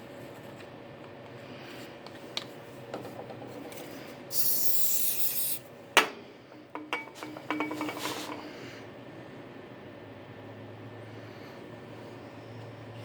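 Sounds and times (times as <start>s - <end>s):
aerosol spray hissing: 4.3s - 5.6s.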